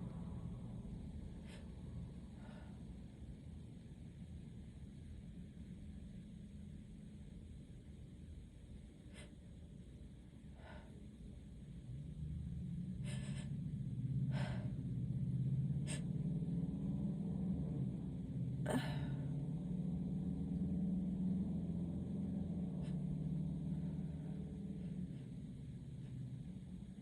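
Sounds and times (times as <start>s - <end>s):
steady low hum: 0.0s - 27.0s
sharp gasping breaths: 13.0s - 14.8s, 15.8s - 16.2s.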